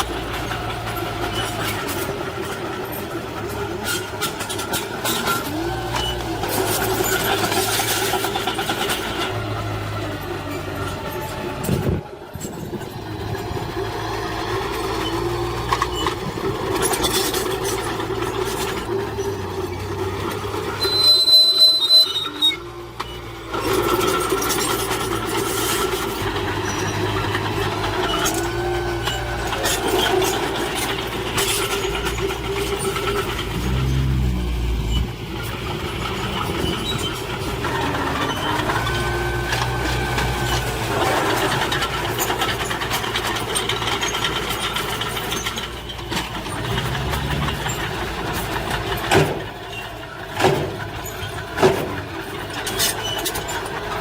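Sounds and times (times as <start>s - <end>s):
heavy diesel machinery engines: 0.0s - 54.0s
squealing whine: 20.8s - 23.2s, 31.6s - 35.2s.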